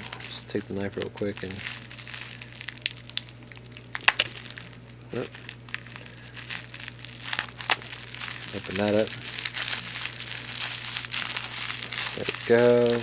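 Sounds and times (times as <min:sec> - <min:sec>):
packaging crinkling: 0:00.0 - 0:13.0
knife cutting packing tape: 0:08.6 - 0:13.0.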